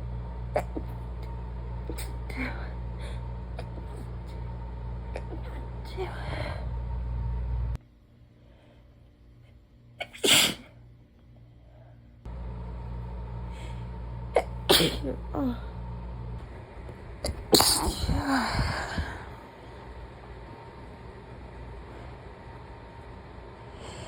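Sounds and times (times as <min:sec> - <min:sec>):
steady low hum: 0:00.0 - 0:24.0
woman sneezing: 0:10.0 - 0:10.7, 0:14.4 - 0:15.6, 0:17.5 - 0:18.5.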